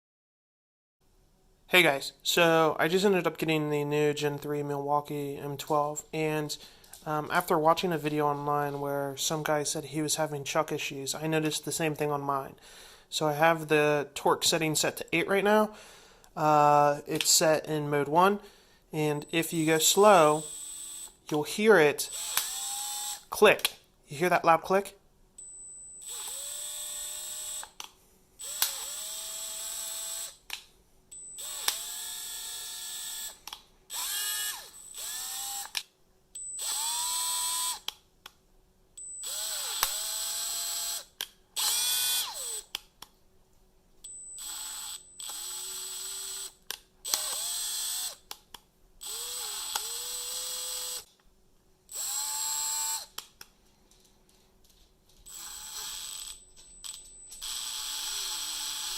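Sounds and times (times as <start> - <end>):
drill motor whine: 20.3 - 21.1, 22.1 - 23.2, 26.0 - 27.8, 28.4 - 30.4, 31.4 - 35.8, 36.6 - 37.8, 39.2 - 42.7, 44.4 - 46.5, 47.1 - 48.2, 49.0 - 51.1, 51.9 - 53.1, 55.3 - 56.4, 57.4 - 58.9
sharp loud drill clutch click: 22.1 - 23.3, 28.4 - 30.4, 31.4 - 35.9, 39.3 - 42.7, 44.4 - 48.2, 49.0 - 51.1, 55.3 - 58.9.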